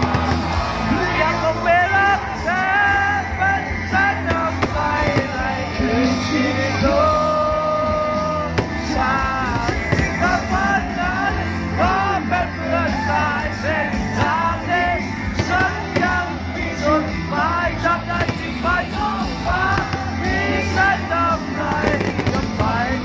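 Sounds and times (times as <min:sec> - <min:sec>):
loud music with steady bass: 0:00.0 - 0:23.0
person singing: 0:00.8 - 0:23.0.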